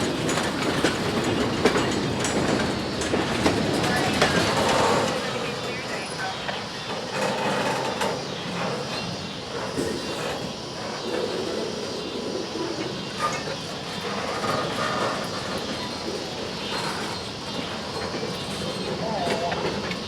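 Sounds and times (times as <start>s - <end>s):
freight train rumbling on track: 0.0s - 20.0s.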